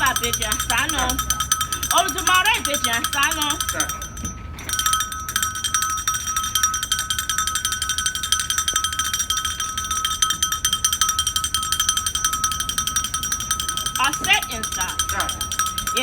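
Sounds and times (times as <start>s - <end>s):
metal bell ringing rapidly: 0.0s - 16.0s.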